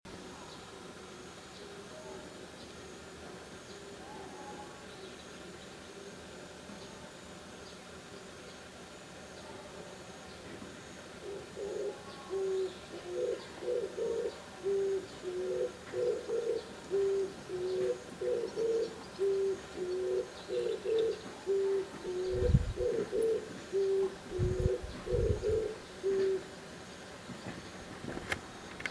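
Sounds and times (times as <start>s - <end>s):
dove hoarse cooing: 11.2s - 26.6s.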